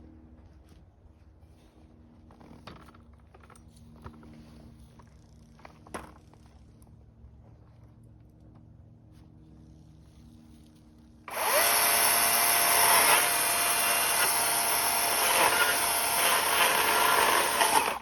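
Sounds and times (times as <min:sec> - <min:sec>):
chainsaw running: 0:11.3 - 0:18.0.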